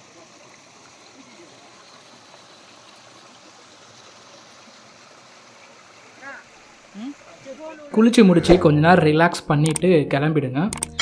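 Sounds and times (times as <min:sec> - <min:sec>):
stream flowing over rocks: 0:00.0 - 0:08.6.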